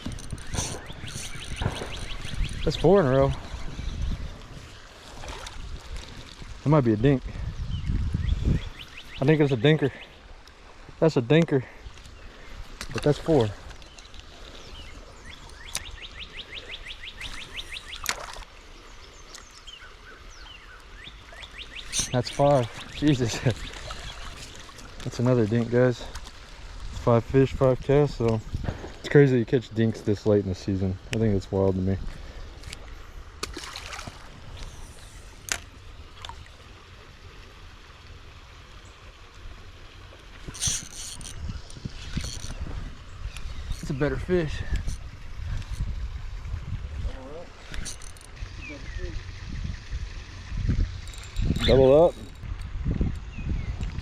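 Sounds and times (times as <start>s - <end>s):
creek water running: 0.0s - 54.0s
songbird trilling: 0.1s - 4.2s, 7.7s - 10.2s, 14.6s - 18.1s, 19.2s - 24.4s, 47.6s - 49.9s, 50.9s - 52.4s
bird chirps: 0.2s - 4.2s, 7.7s - 10.2s, 13.8s - 18.1s, 19.2s - 24.3s, 47.6s - 49.8s
crackling splash: 33.4s - 34.6s.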